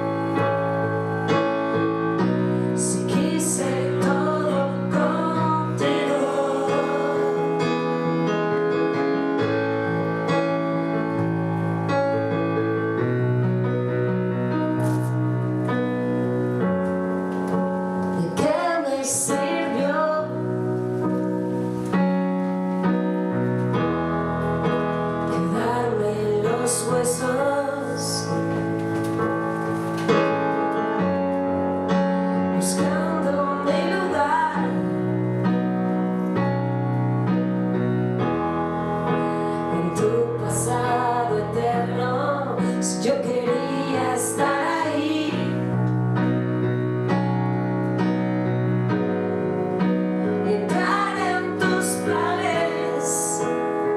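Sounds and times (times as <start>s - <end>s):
piano chords: 0.0s - 53.9s
woman singing: 2.8s - 8.0s, 18.2s - 20.5s, 25.3s - 28.4s, 32.6s - 35.0s, 39.6s - 45.8s, 50.4s - 53.9s.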